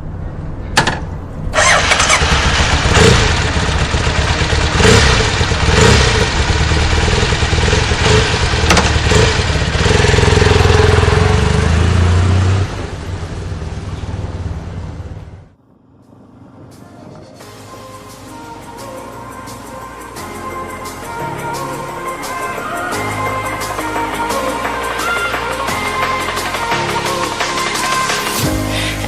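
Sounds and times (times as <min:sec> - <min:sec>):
motorcycle engine running loudly: 0:01.6 - 0:15.6.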